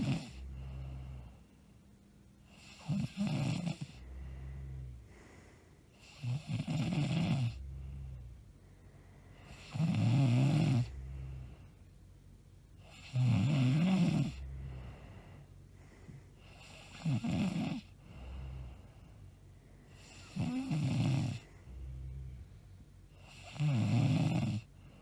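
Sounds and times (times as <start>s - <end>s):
woman snoring: 0.0s - 1.3s, 2.5s - 8.0s, 9.4s - 11.2s, 12.8s - 15.2s, 16.4s - 18.8s, 19.9s - 22.3s, 23.2s - 24.7s
soft low breath: 0.0s - 2.6s, 3.8s - 6.2s, 7.6s - 9.8s, 14.4s - 17.2s, 17.8s - 23.5s.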